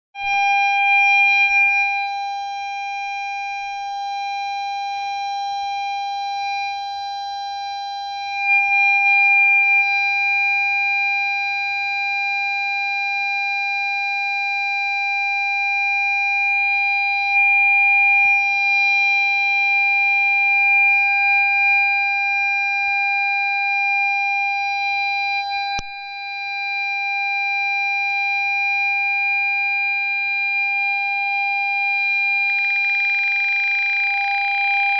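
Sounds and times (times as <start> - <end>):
parking sensor steady tone: 0.2 - 11.9.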